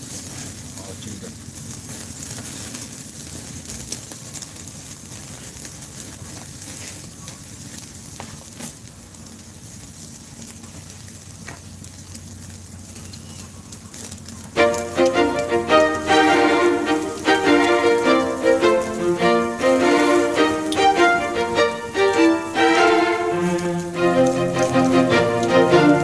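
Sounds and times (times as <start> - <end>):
charcoal crackles and pops: 0.0 - 14.6
meat sizzling over charcoal: 0.0 - 15.0.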